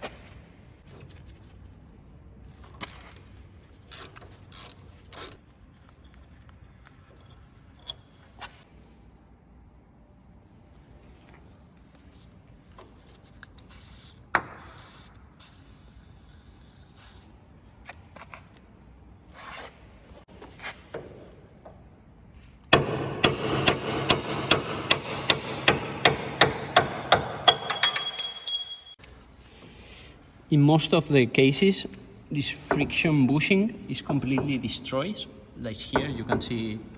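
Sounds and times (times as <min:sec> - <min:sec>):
metallic ring: 0:27.5 - 0:29.0.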